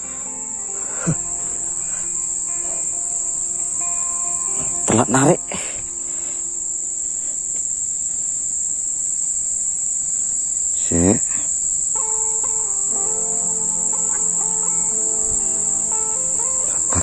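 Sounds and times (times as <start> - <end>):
melody of held notes: 0.0 - 8.9, 11.8 - 17.0
high-pitched insect buzz: 0.0 - 17.0
cry sweeping down in pitch: 12.0 - 17.0.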